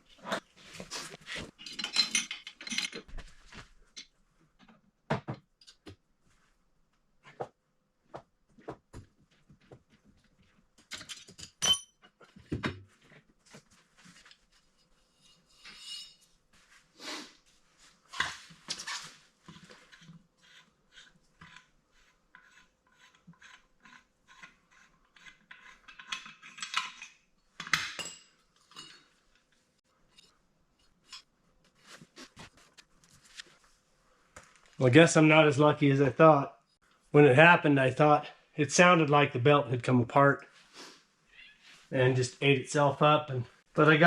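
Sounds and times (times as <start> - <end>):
hand tools and metal parts clinking: 1.1 - 4.1, 10.8 - 12.4, 25.4 - 29.1.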